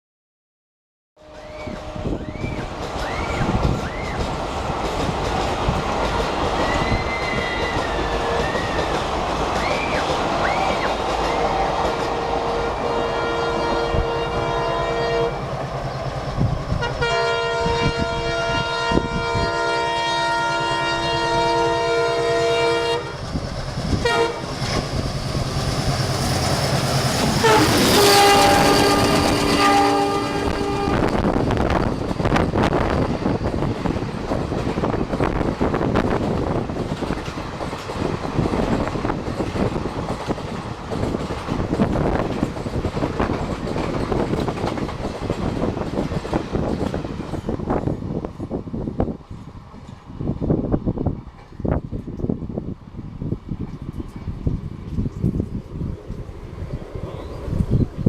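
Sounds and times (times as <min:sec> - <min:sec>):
train rumble: 0:01.2 - 0:58.0
locomotive horn blasts: 0:12.0 - 0:15.4, 0:16.8 - 0:23.2, 0:24.0 - 0:24.4, 0:27.4 - 0:31.2.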